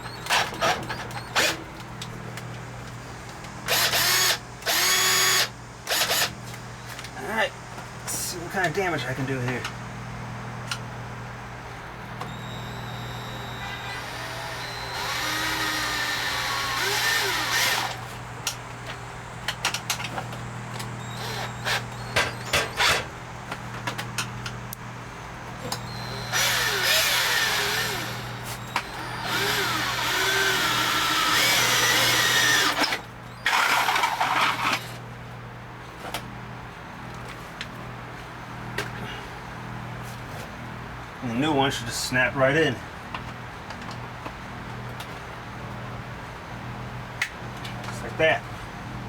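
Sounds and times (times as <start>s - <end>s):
steady low hum: 0.0s - 33.4s
electric drill boring: 3.7s - 6.4s, 12.2s - 18.0s, 21.0s - 23.1s, 25.6s - 34.9s.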